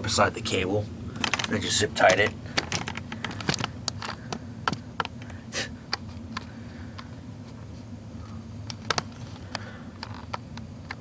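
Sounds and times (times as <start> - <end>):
steady low hum: 0.0 - 11.0
clicks from handling cables: 1.2 - 7.1.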